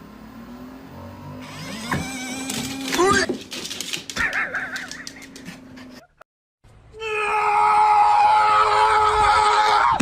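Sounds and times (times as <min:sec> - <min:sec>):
long loud cry: 0:07.0 - 0:10.0.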